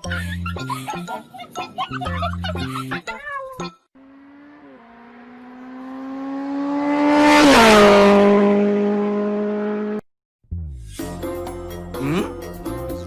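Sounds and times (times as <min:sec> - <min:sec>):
vehicle passing by: 0:04.0 - 0:10.0.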